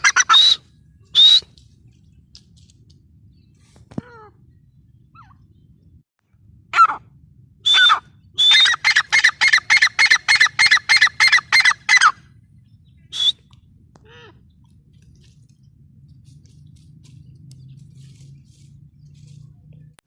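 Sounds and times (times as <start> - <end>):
bird calling ringing notes: 6.8 - 13.5.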